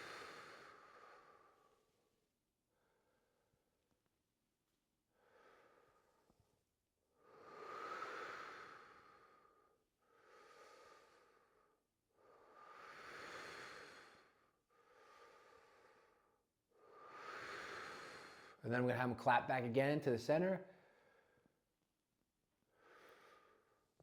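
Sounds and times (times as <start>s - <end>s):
person breathing slowly: 0.0s - 3.6s, 5.1s - 6.5s, 7.1s - 18.6s, 20.7s - 21.6s, 22.6s - 24.0s.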